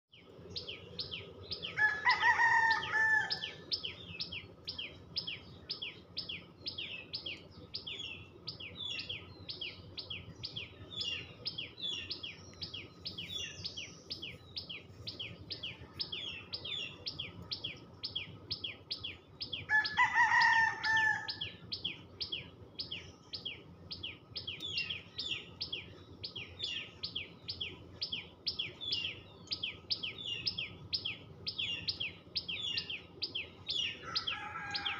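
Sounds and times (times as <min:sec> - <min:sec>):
bird chirping rapidly: 0:00.5 - 0:34.9
rooster crowing: 0:01.6 - 0:03.7, 0:19.7 - 0:21.5, 0:33.8 - 0:34.9.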